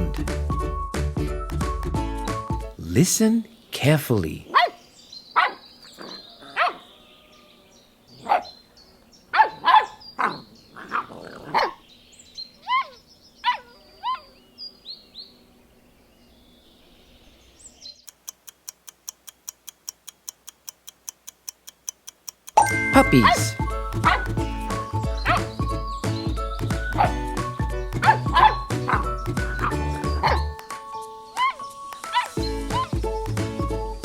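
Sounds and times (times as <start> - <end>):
puppy yelps: 4.5 - 4.8, 5.4 - 6.9, 9.4 - 11.8, 12.6 - 14.4, 24.0 - 24.3, 25.2 - 25.5, 28.0 - 30.5, 31.4 - 32.9
puppies yapping: 4.5 - 7.6, 9.3 - 11.8, 12.6 - 14.4, 23.8 - 30.7, 31.3 - 33.0
fast even ticking: 18.0 - 22.6.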